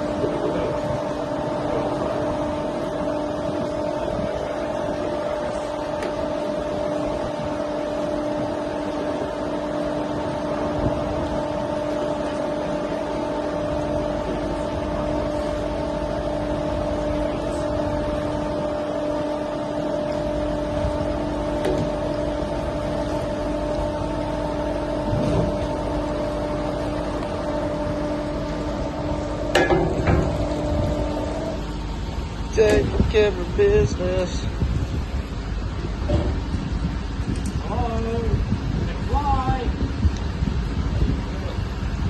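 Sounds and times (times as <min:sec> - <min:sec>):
steady machine hum: 0:00.0 - 0:42.0.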